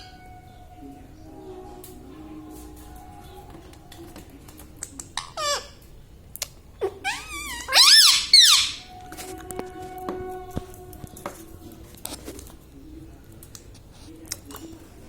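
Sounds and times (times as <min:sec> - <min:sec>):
parrot squeaking: 0:05.2 - 0:05.8, 0:06.8 - 0:09.0.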